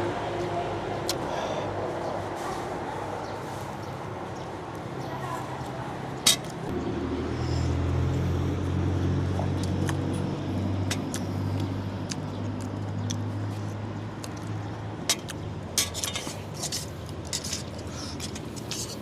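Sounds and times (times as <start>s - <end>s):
vehicle engine running: 6.5s - 19.0s.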